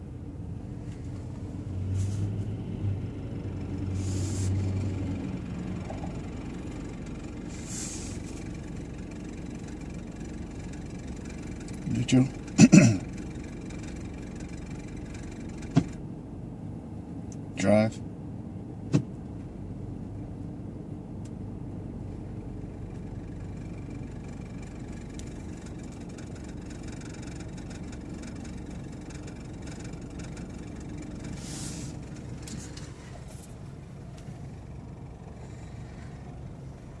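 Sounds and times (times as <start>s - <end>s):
car engine idling: 0.0s - 37.0s
short hiss: 4.0s - 4.6s, 7.5s - 8.3s, 31.4s - 32.0s.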